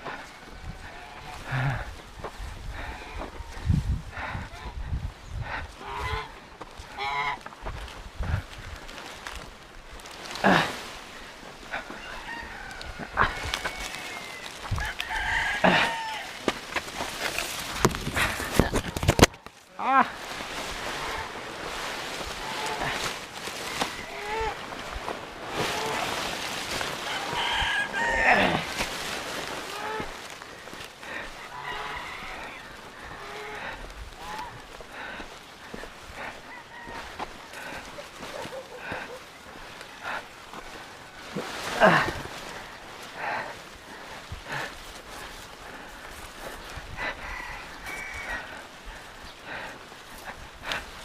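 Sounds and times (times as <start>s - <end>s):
rooster crowing: 11.8s - 16.5s, 26.8s - 28.7s, 31.4s - 33.6s, 36.2s - 37.8s, 47.1s - 48.6s.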